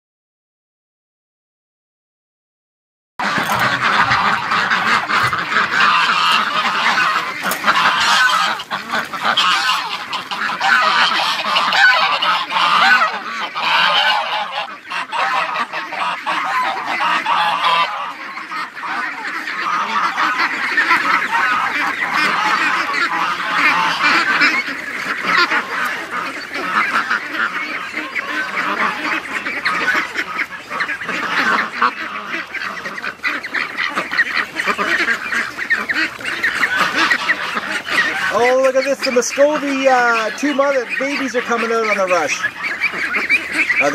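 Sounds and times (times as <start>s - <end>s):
ducks quacking: 3.2s - 43.9s
geese honking: 3.2s - 43.9s.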